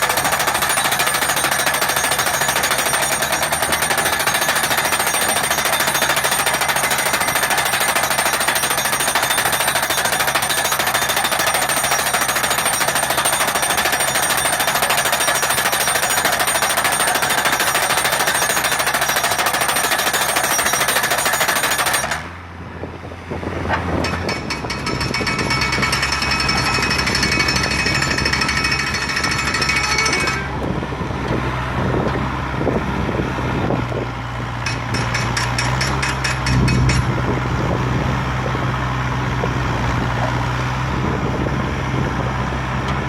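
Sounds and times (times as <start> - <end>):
rapid mechanical hammering: 0.0 - 22.2, 34.6 - 37.1.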